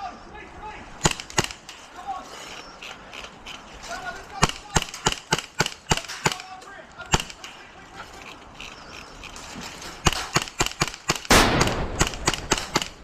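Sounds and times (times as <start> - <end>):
airsoft guns firing: 1.0 - 1.8, 4.4 - 7.7, 10.0 - 13.0.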